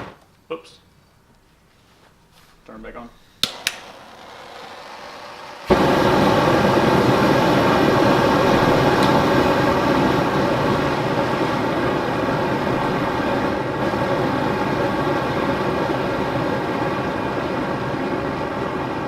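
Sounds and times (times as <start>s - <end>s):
gas burner roaring: 3.2s - 19.0s
burner igniting whump: 3.4s - 16.3s.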